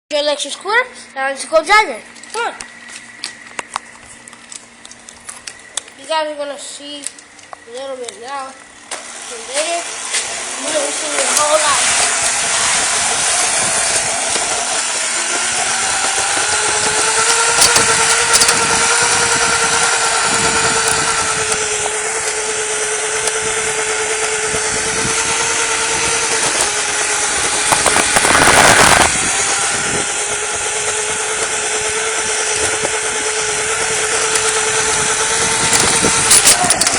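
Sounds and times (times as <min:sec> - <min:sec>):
electric scooter motor whining: 0:00.3 - 0:36.9
road and wind noise: 0:10.0 - 0:36.9.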